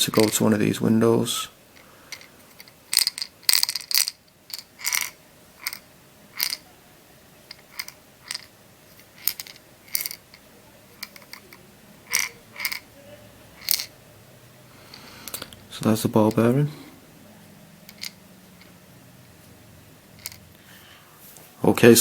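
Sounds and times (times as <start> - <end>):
ball bearing rattling in a maze: 0.0 - 0.6, 2.1 - 6.6, 7.5 - 12.9, 13.6 - 14.0, 17.9 - 18.7, 20.2 - 20.4.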